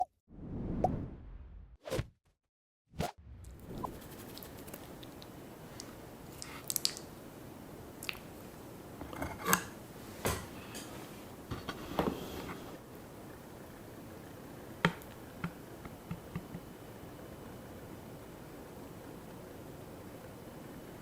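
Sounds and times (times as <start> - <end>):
steady background hiss: 3.7 - 9.1, 9.7 - 21.0.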